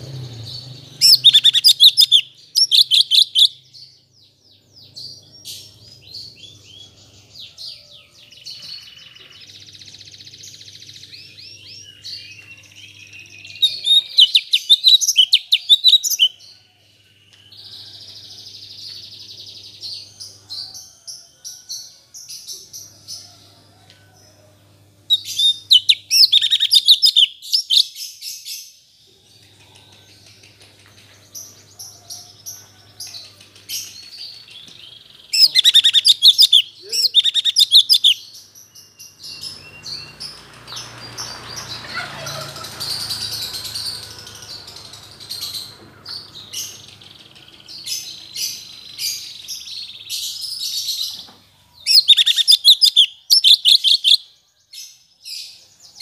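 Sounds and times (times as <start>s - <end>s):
songbird warbling chirps: 0.0s - 16.6s, 25.1s - 28.0s, 31.4s - 56.0s.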